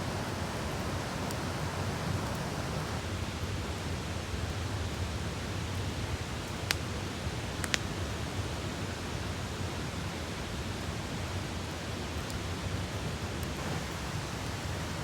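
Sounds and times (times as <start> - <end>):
burning wood crackling: 0.0 - 3.0, 13.4 - 15.0
campfire hiss and rumble: 0.0 - 15.0.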